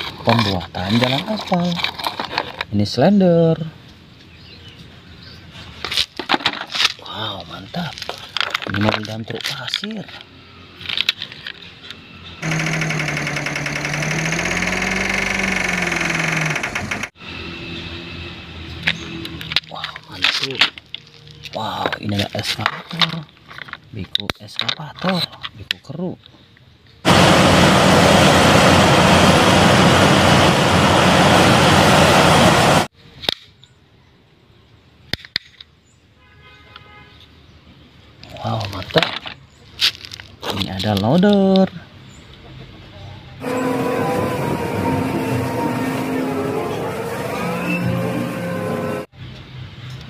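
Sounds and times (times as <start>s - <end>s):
dump truck engine running: 12.4s - 17.2s, 27.1s - 32.9s, 43.4s - 49.1s.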